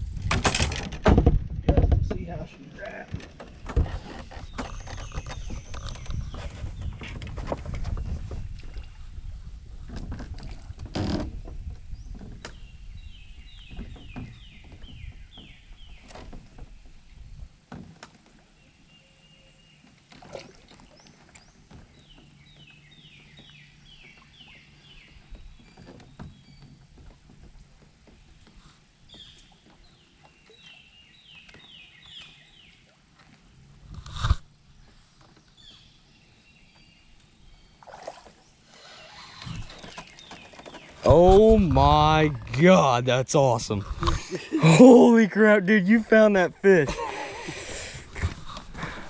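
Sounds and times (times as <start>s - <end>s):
water sloshing around boat: 0.0s - 42.8s, 43.4s - 49.0s
knocks and bumps on boat: 0.1s - 8.7s, 13.4s - 17.0s, 25.0s - 30.0s.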